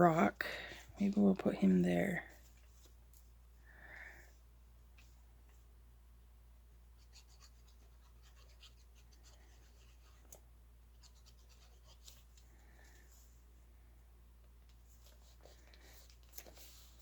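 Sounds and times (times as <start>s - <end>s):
low steady hum: 0.0s - 17.0s
paper rustling and clicking: 14.6s - 17.0s.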